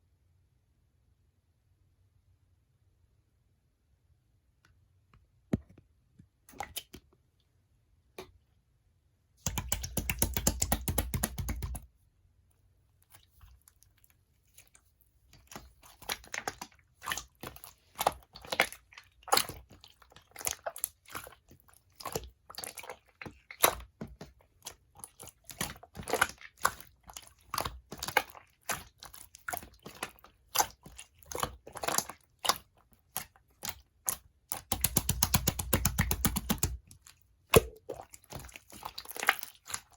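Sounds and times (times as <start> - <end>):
slime clicking and popping: 9.4 - 11.8, 33.2 - 36.8, 37.5 - 39.8.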